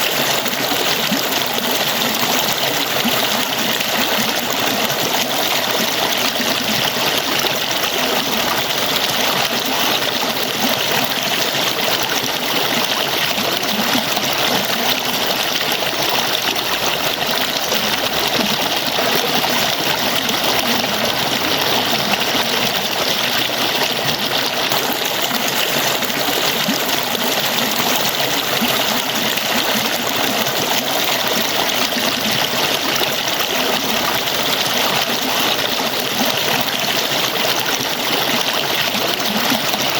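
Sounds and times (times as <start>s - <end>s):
falling water rushing: 0.0s - 39.9s.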